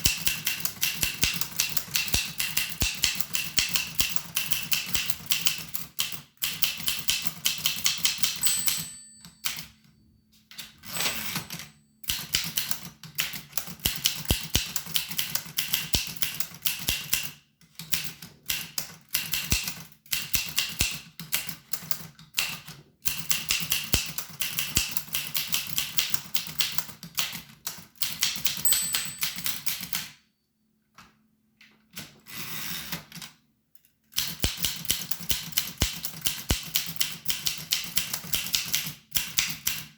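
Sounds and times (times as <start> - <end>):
typewriter keys striking: 0.0 - 9.6.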